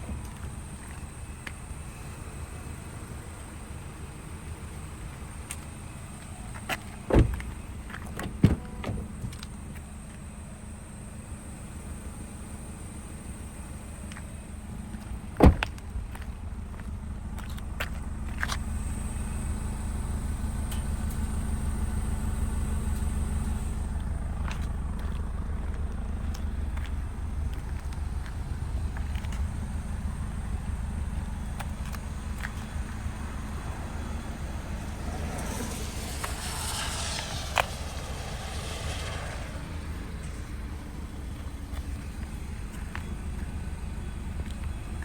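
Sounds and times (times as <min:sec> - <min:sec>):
car engine humming: 0:00.0 - 0:45.0
hiss: 0:35.0 - 0:40.4.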